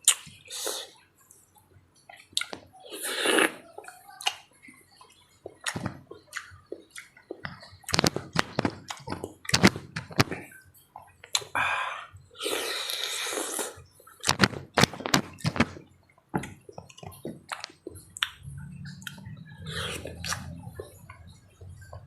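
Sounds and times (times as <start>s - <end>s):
wet chewing: 0.0s - 9.8s, 16.4s - 22.0s
slurping: 2.2s - 4.4s, 12.4s - 13.8s, 17.5s - 21.9s.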